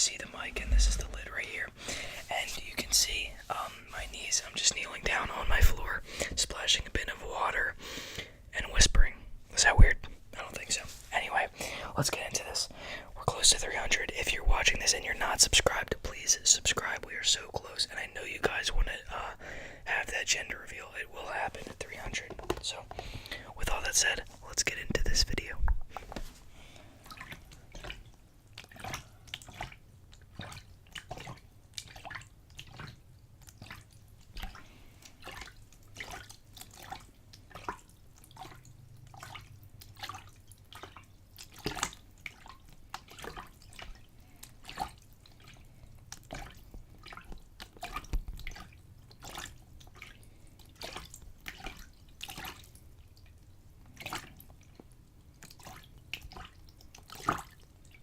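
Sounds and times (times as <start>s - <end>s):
water splashing in a container: 26.8s - 58.0s.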